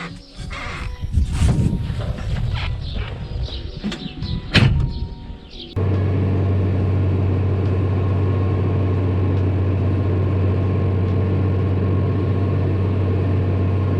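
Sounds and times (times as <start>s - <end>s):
large engine droning: 5.8s - 13.9s.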